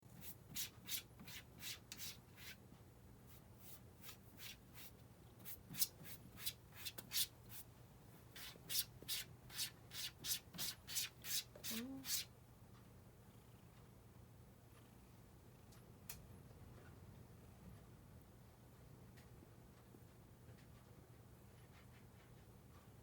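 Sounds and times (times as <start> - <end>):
cat paw scraping hard surface: 3.6 - 7.6, 8.3 - 12.2.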